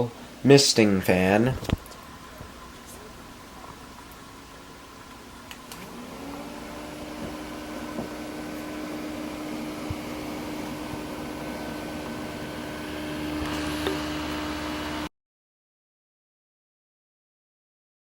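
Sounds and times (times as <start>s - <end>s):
small fan motor whining: 1.6s - 15.1s.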